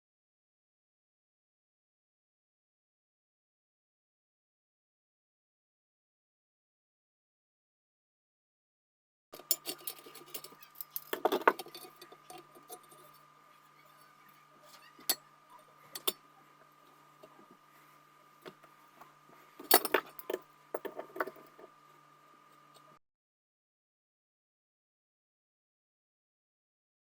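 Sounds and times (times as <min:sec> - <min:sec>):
metal parts clinking and rattling: 0:09.4 - 0:13.2, 0:15.9 - 0:16.2, 0:19.6 - 0:21.7
faint steady hum: 0:09.4 - 0:23.0.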